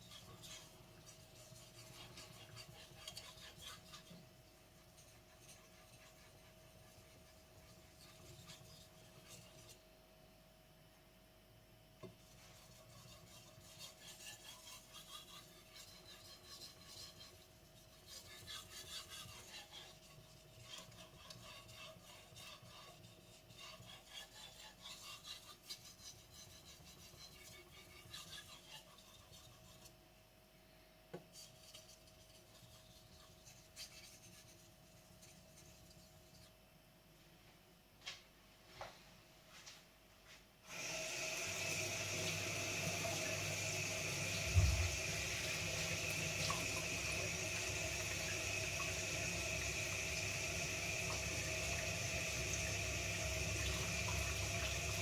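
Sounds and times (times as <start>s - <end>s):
knife rasping on whetstone: 0.0s - 4.2s, 5.0s - 9.8s, 12.3s - 29.9s.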